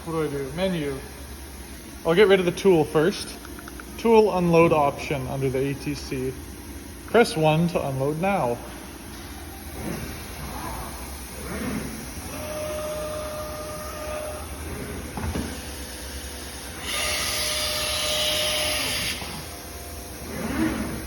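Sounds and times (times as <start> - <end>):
motor whine: 3.1 - 21.0
compressed air hiss: 14.6 - 21.0.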